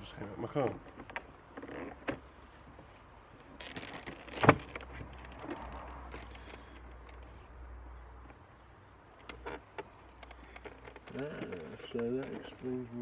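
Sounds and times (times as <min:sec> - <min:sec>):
clicks and rustling on door panel: 0:03.5 - 0:07.3.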